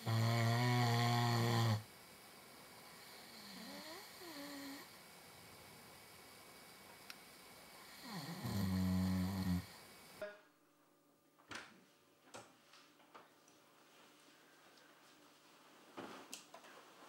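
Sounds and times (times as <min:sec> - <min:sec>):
man snoring: 0:00.0 - 0:01.9, 0:02.8 - 0:05.0, 0:07.8 - 0:09.8.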